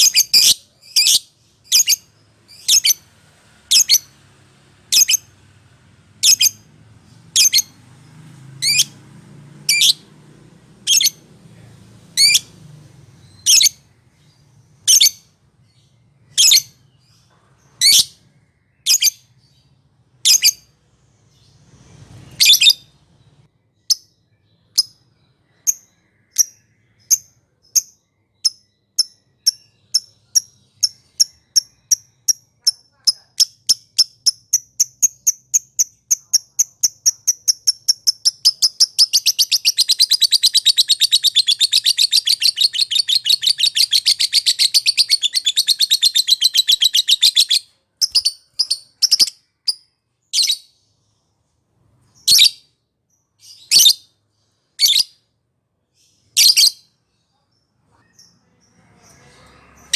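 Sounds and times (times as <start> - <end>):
lovebird shrill chirps: 0.0 - 3.1, 3.7 - 4.1, 4.9 - 5.3, 6.2 - 6.7, 7.3 - 7.8, 8.6 - 9.0, 10.8 - 11.2, 12.2 - 12.5, 13.2 - 17.1, 22.3 - 23.0, 23.8 - 50.8, 52.1 - 52.7, 54.8 - 55.2, 56.3 - 57.0.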